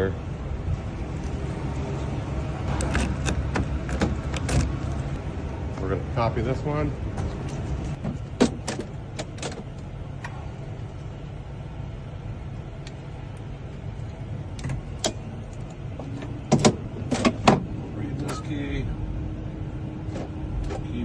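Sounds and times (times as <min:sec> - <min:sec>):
vehicle engine rumble: 0:00.0 - 0:21.0
car key and tools clicking: 0:02.7 - 0:04.9.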